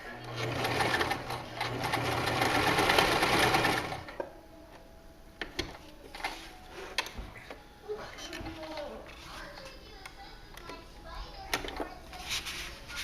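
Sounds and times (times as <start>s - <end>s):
sewing machine stitching: 0.2s - 4.1s.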